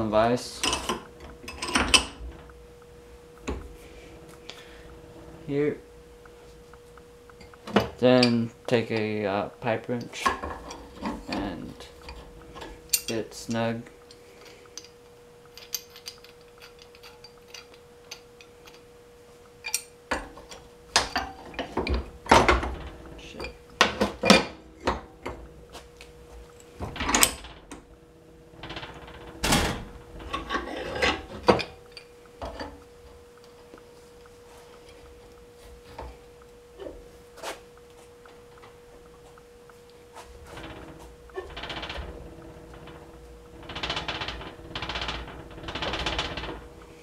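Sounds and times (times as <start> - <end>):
metal knocks and clanks: 20.1 - 32.8, 40.2 - 47.0.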